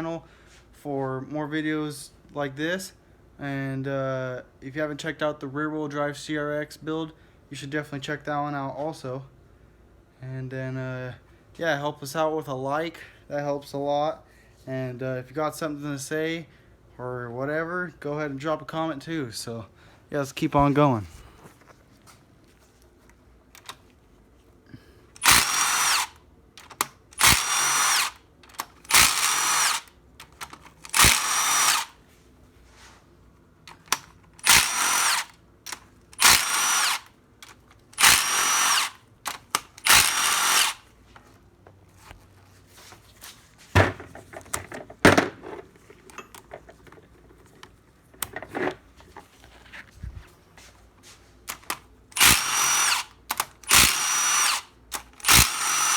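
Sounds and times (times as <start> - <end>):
power tool spinning bolts out: 25.2 - 32.0, 33.7 - 40.9, 51.5 - 55.9.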